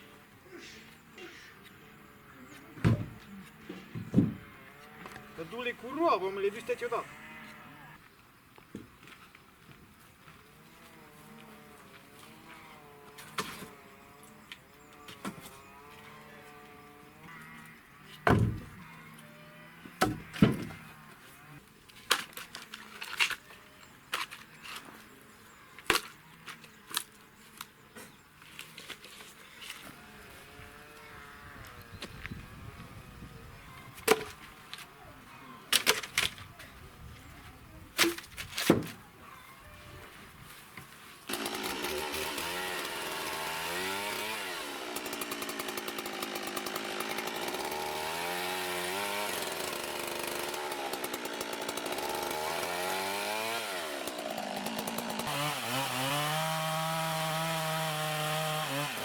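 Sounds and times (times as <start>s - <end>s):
knocks and thumps: 2.8s - 3.2s, 3.9s - 4.4s, 18.2s - 18.8s
sharp wooden knocks: 4.0s - 4.4s, 18.2s - 18.7s, 20.0s - 20.8s.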